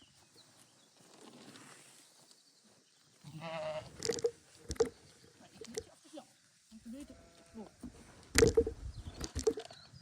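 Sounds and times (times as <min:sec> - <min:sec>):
sheep bleating: 0:03.2 - 0:03.9.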